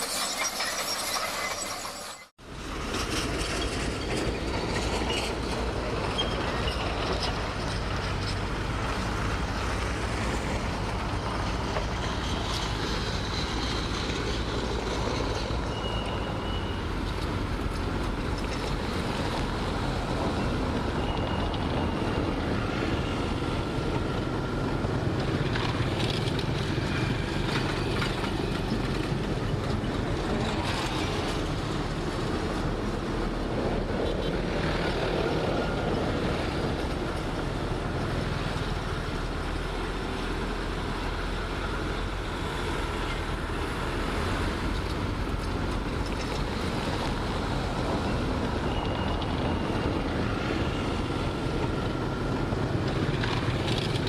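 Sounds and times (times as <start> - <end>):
faint high squeals: 0.0 - 2.3, 15.3 - 17.0
heavy diesel machinery running: 0.0 - 54.0.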